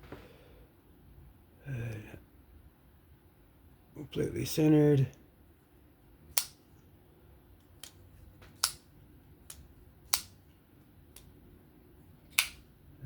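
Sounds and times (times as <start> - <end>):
folding knife blade clicking: 12.3 - 12.6.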